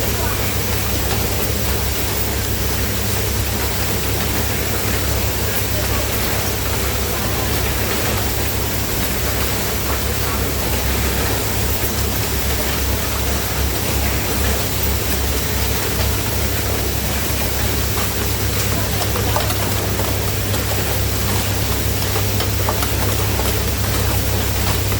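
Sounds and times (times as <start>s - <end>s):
factory machinery running: 0.0s - 24.9s.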